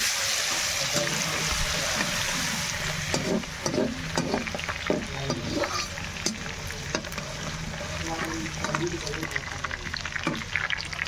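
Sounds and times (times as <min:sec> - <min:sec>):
food sizzling in oil: 0:00.0 - 0:11.0
spoon scraping a pan: 0:00.3 - 0:09.1.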